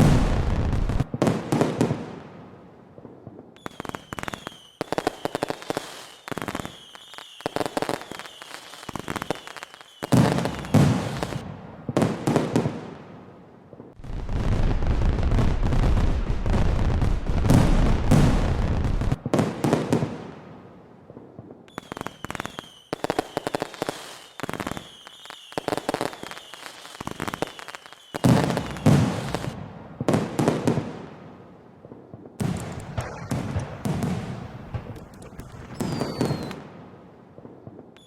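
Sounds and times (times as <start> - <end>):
fireworks booming: 0.0 - 2.1, 13.9 - 20.6, 28.2 - 38.0
fireworks crackling pops: 0.0 - 2.1, 3.0 - 38.0
fireworks whistling: 3.6 - 11.4, 21.7 - 29.6, 32.4 - 36.9.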